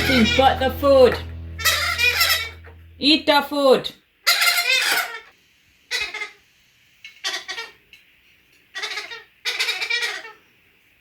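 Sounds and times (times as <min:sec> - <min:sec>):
parrot calls: 0:01.6 - 0:02.9, 0:04.2 - 0:05.3, 0:05.9 - 0:06.4, 0:07.2 - 0:07.8, 0:08.7 - 0:10.4.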